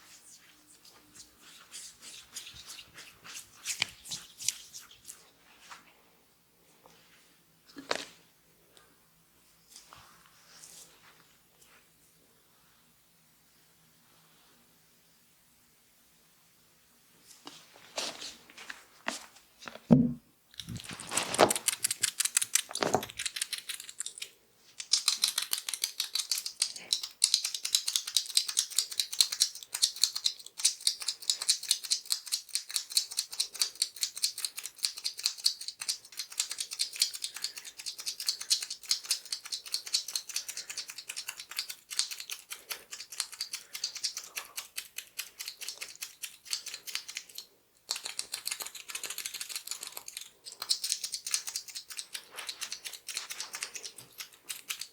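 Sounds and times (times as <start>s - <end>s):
fast crisp clicking: 20.8s - 54.9s.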